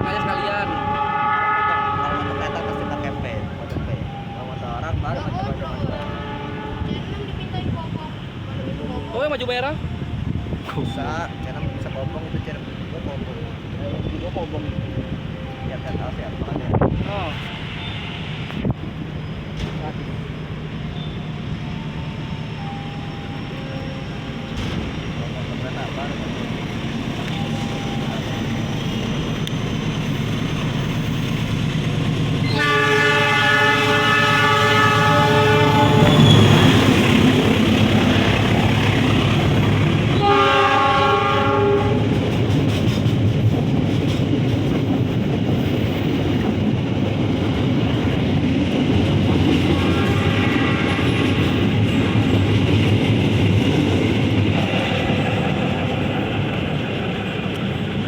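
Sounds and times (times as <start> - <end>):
locomotive air horn chord: 0.0 - 3.6, 6.0 - 7.0, 32.4 - 36.8, 40.2 - 42.1
locomotive rumble: 0.0 - 58.0.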